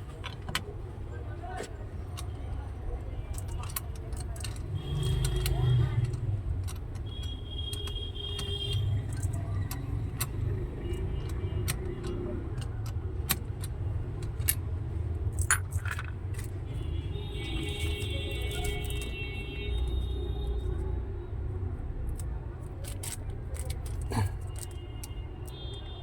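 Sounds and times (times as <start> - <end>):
small metal parts clinking: 3.3 - 19.3, 22.1 - 25.7.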